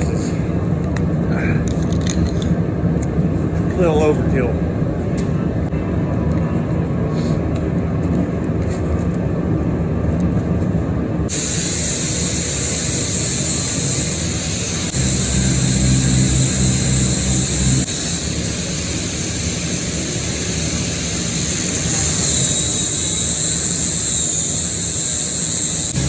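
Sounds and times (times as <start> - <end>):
angle grinder humming: 12.6 - 26.0.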